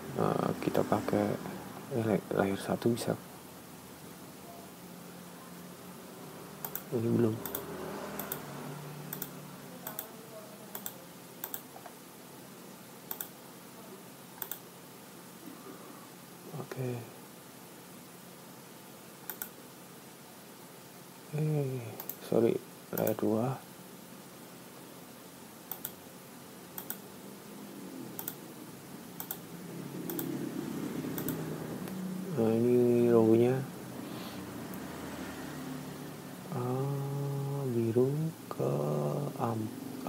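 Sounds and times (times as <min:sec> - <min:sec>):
mouse and keyboard clicks: 0:06.6 - 0:08.5, 0:13.1 - 0:13.3, 0:14.4 - 0:14.6, 0:19.3 - 0:19.5, 0:25.7 - 0:26.0, 0:26.8 - 0:27.0, 0:28.2 - 0:28.4, 0:29.2 - 0:29.4, 0:30.1 - 0:30.3, 0:31.2 - 0:31.4.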